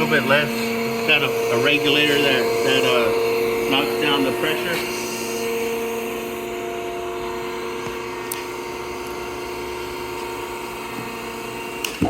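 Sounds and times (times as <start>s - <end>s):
air compressor humming: 0.0s - 12.0s.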